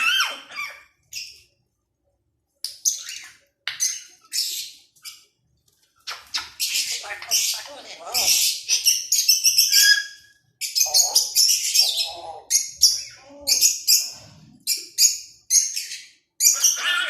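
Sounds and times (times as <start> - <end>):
parrot squawking: 0.0 - 1.3, 6.1 - 14.1, 14.9 - 17.0.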